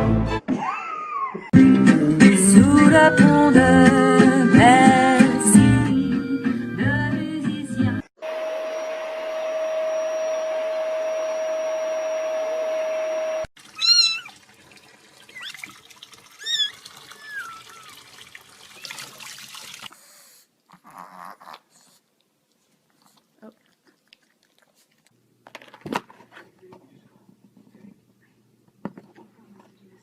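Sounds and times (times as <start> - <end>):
water running: 13.6 - 20.0
cat meowing: 13.8 - 14.4.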